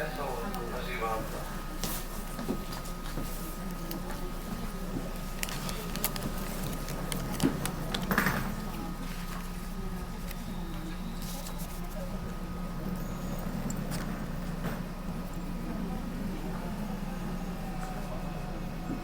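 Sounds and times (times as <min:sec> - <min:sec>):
train carriage hum: 0:00.0 - 0:19.0
plastic wrapper clicks and rustle: 0:05.2 - 0:08.3.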